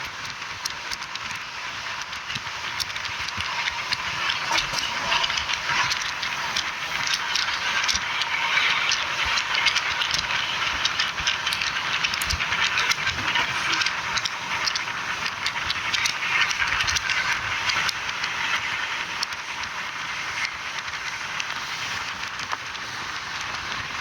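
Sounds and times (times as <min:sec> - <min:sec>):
train rushing along track: 0:01.7 - 0:23.5
wheel clicks and rattles: 0:02.0 - 0:20.9.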